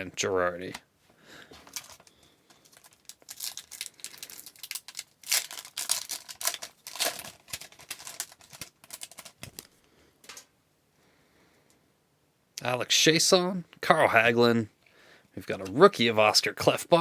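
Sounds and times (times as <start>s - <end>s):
plastic wrapper tearing and crinkling: 1.7s - 10.4s.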